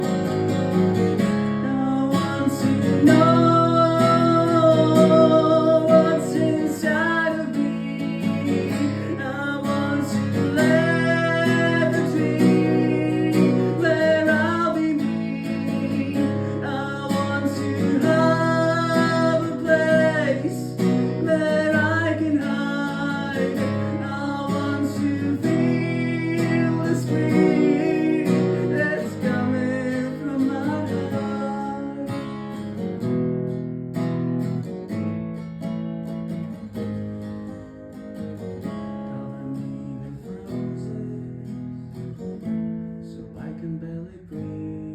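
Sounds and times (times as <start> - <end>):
acoustic guitar strumming: 0.0 - 44.9
person singing: 1.5 - 32.5, 39.0 - 41.5.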